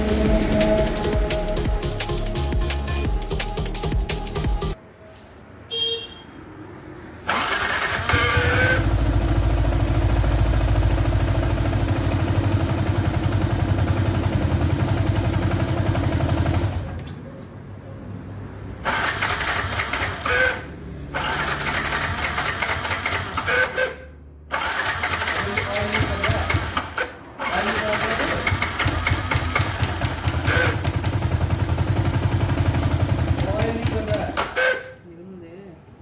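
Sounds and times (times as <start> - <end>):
motorcycle engine running: 0.0 - 2.3, 8.1 - 17.0, 27.7 - 34.4.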